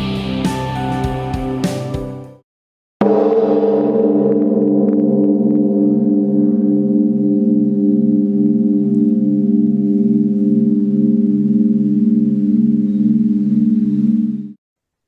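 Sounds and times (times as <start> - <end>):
pulsing bell-like drone: 3.0 - 14.6.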